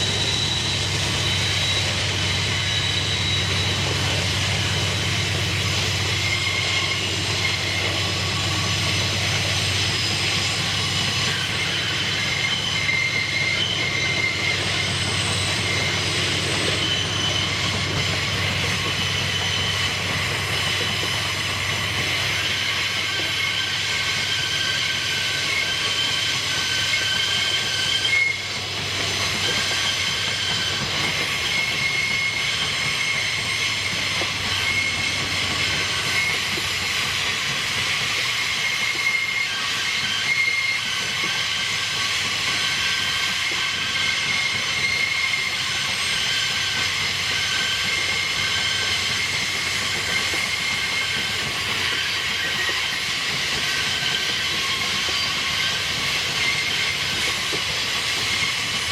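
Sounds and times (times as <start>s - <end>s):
high-pitched wheel squeal: 0.0s - 58.9s
railway wagons rumbling: 0.0s - 58.9s.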